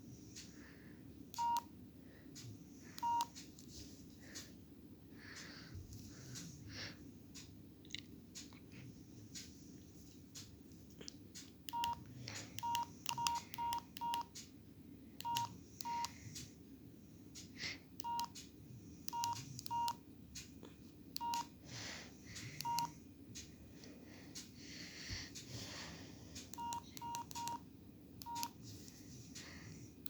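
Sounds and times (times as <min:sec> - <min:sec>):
electronic key-press beeps: 0:01.4 - 0:01.7, 0:03.0 - 0:03.3, 0:11.7 - 0:12.0, 0:12.6 - 0:14.3, 0:15.2 - 0:16.1, 0:18.0 - 0:18.4, 0:19.1 - 0:20.0, 0:21.2 - 0:21.5, 0:22.6 - 0:22.9, 0:26.6 - 0:27.6, 0:28.2 - 0:28.6
keypad clicks: 0:11.4 - 0:12.0, 0:12.6 - 0:14.5, 0:15.2 - 0:16.2, 0:18.0 - 0:18.4, 0:22.6 - 0:22.9, 0:26.5 - 0:27.6, 0:28.2 - 0:28.6.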